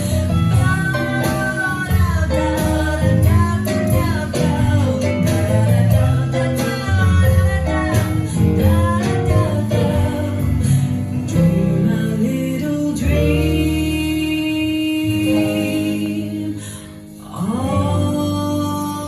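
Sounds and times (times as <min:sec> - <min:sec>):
guitar: 0:00.0 - 0:19.0
person singing: 0:00.0 - 0:19.0.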